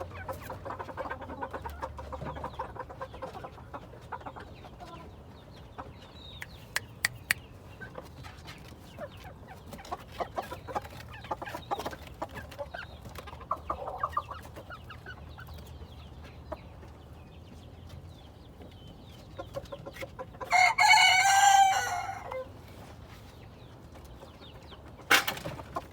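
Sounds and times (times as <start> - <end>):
chickens clucking: 0.0 - 25.9
sharp clicks: 6.4 - 7.4
rooster crowing: 20.5 - 22.5.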